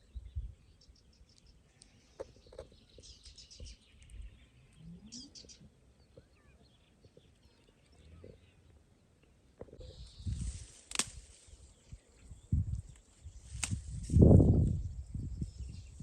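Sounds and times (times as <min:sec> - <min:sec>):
bird chirps: 0:00.0 - 0:08.8.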